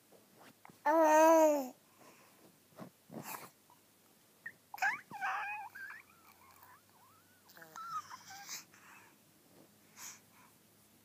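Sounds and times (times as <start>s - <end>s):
dog whining and grumbling: 4.8s - 8.6s.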